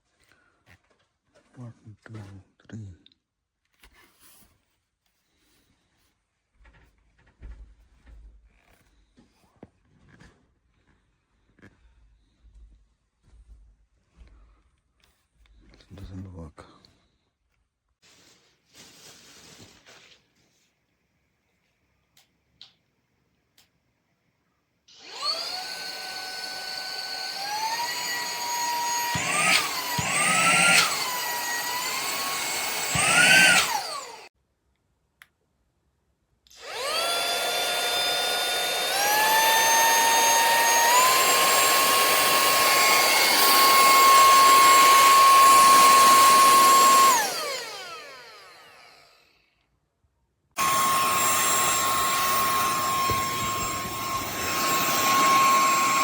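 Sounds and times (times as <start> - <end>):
handheld vacuum cleaner whining: 24.9 - 34.3, 36.5 - 49.7, 50.6 - 56.0.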